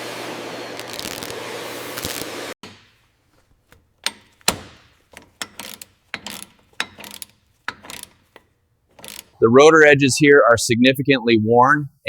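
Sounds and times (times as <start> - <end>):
tools knocking on vehicle parts: 3.7 - 9.3.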